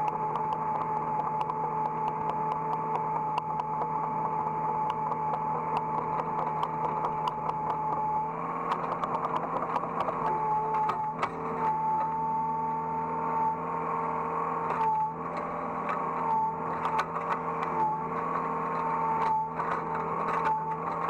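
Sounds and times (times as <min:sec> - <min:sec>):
sharp clicks: 0:00.0 - 0:11.4
excavator engine running: 0:00.0 - 0:21.0
high hydraulic whine: 0:00.0 - 0:21.0.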